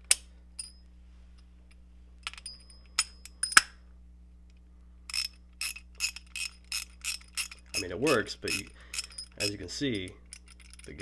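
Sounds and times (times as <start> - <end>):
metallic clinks of steel tools: 0.6 - 0.9, 2.3 - 3.8, 5.1 - 11.0
ratchet clicking: 5.1 - 11.0.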